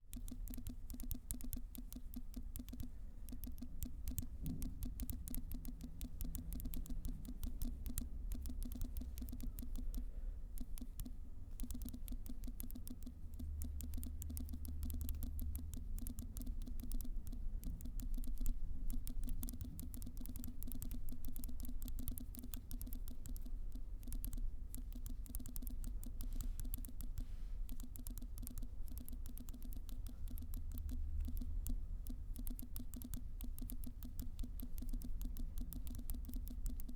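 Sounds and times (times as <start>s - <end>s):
fingertips tapping touchscreen: 0.0s - 36.9s
steady low hum: 0.0s - 36.9s.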